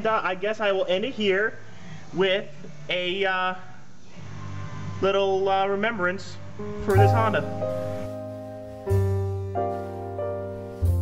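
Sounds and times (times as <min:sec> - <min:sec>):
slow piano music: 0:06.4 - 0:11.0.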